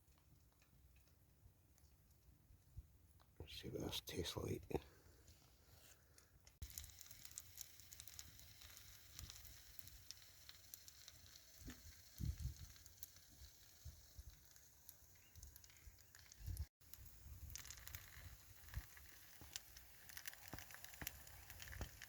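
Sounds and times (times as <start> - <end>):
food sizzling in a pan: 6.6 - 22.0.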